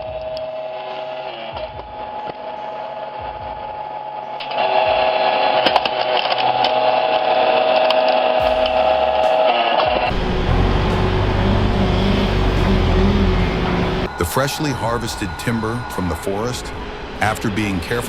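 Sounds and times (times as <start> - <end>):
electric motor whining: 4.4 - 17.2.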